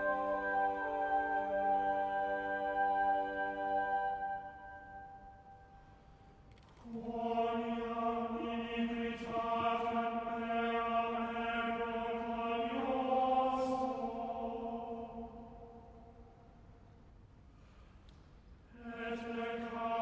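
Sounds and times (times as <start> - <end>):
person singing a long note: 0.0 - 5.0.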